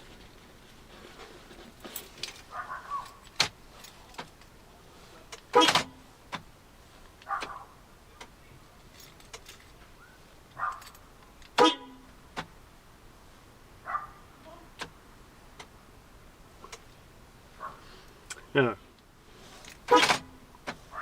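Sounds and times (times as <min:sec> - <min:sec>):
car doors banging shut: 0:05.3 - 0:06.5, 0:19.8 - 0:21.0.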